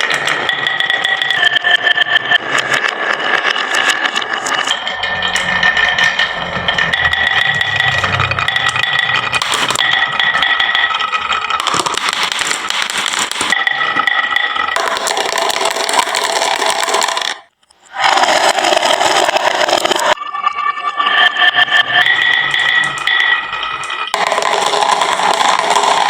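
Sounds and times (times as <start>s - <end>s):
marbles rattling down wooden run: 0.0s - 17.5s, 18.1s - 20.2s, 22.1s - 26.0s.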